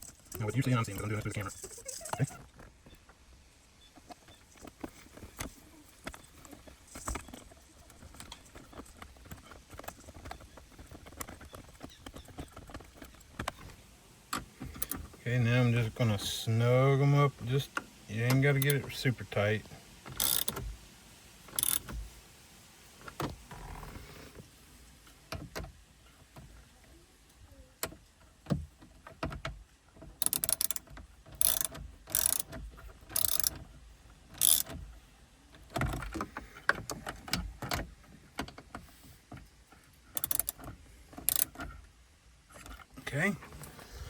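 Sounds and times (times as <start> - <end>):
socket ratchet clicking: 20.1 - 20.6, 21.5 - 22.0, 30.2 - 32.6, 33.2 - 33.6, 34.4 - 34.8, 40.2 - 41.6.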